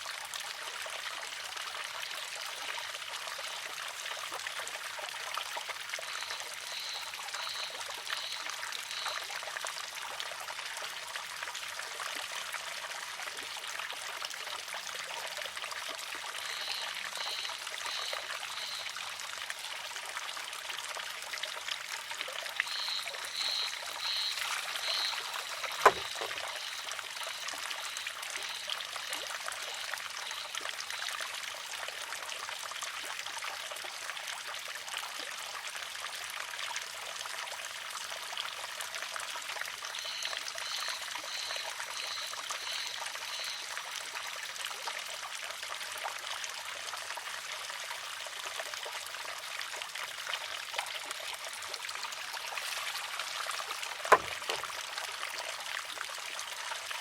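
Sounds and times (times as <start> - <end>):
water trickling: 0.0 - 45.7, 48.7 - 57.0
wooden clack: 25.7 - 26.6, 54.1 - 54.7.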